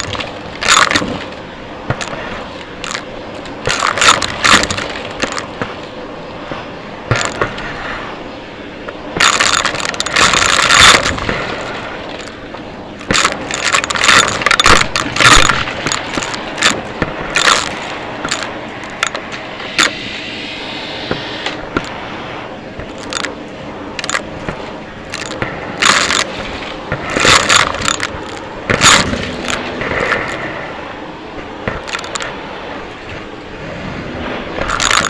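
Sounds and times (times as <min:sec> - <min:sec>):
debris crackling and rattling: 0:00.0 - 0:06.0, 0:07.1 - 0:07.7, 0:09.2 - 0:20.0, 0:22.8 - 0:30.6, 0:31.6 - 0:32.4, 0:34.6 - 0:35.0.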